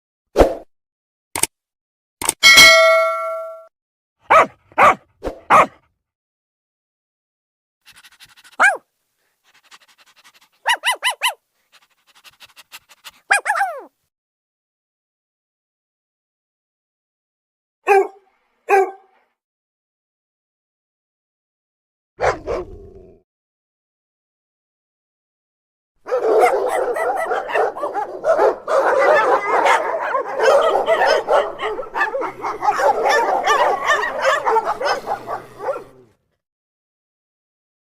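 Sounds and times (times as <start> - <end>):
dog yipping: 4.3 - 5.8, 7.9 - 8.8, 9.6 - 11.9, 13.1 - 13.9, 17.9 - 19.0, 22.2 - 22.6, 26.1 - 36.0
dog panting: 7.8 - 11.0, 11.6 - 13.3, 26.4 - 35.4.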